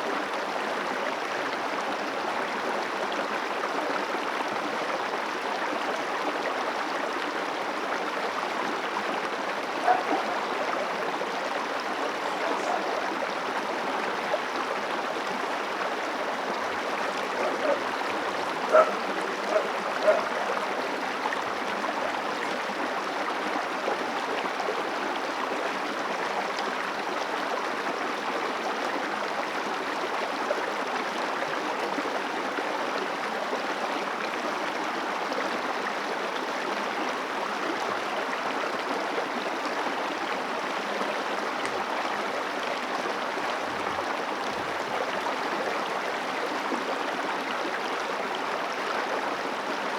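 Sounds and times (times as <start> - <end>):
river water rushing: 5.8 - 27.4.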